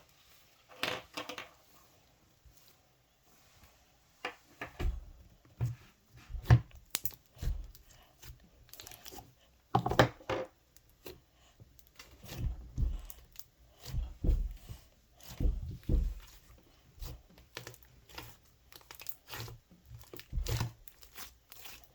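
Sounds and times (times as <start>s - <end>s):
slime crackling and popping: 6.8s - 7.9s, 8.6s - 9.2s, 11.8s - 14.0s, 17.0s - 21.9s
soft low thuds: 13.8s - 16.3s.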